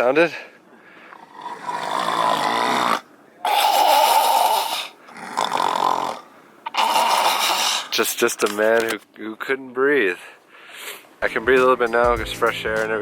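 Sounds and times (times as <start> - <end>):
man imitating congested snoring: 1.1 - 7.9.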